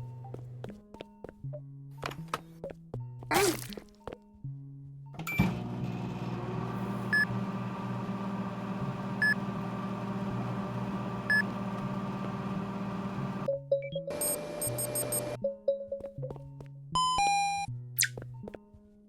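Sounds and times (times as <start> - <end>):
steady machine hum: 5.5 - 13.5, 14.1 - 15.4.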